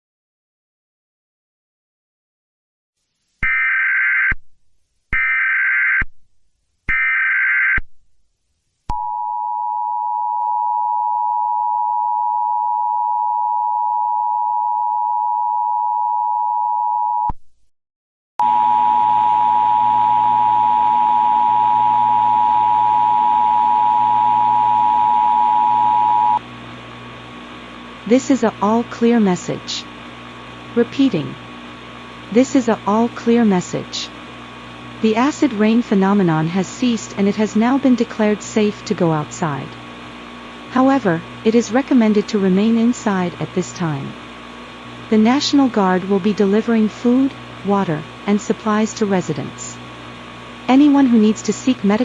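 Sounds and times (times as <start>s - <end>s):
two-tone attention signal: 18.4s - 26.4s
low hum: 18.4s - 52.0s.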